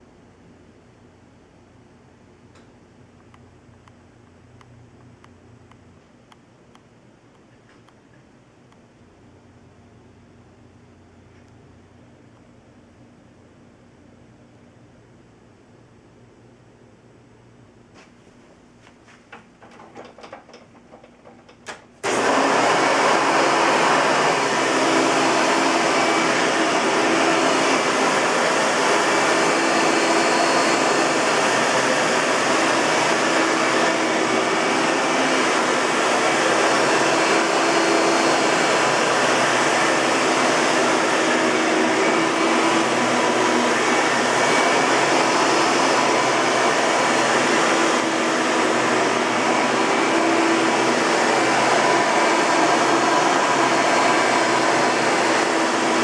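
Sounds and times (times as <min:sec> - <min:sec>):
vacuum cleaner running: 0:19.0 - 0:56.0.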